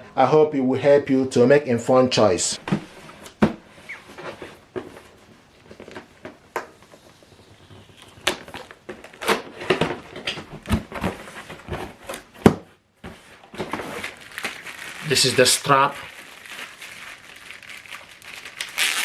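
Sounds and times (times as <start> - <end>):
cardboard packaging handling: 13.1 - 19.0.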